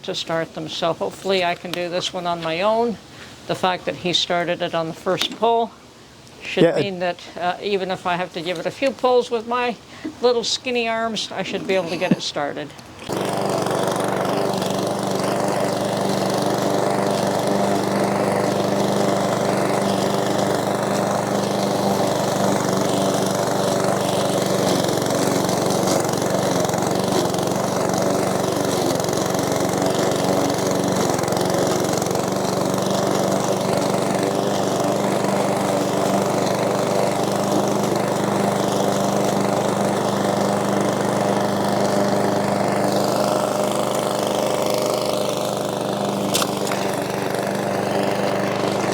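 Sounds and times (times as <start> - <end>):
lawn mower engine running: 11.4 - 48.9.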